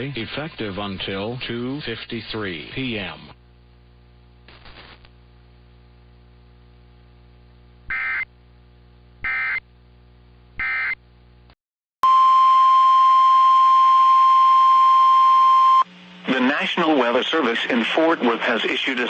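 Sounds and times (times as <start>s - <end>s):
low electrical hum: 0.0s - 11.6s, 15.5s - 19.0s.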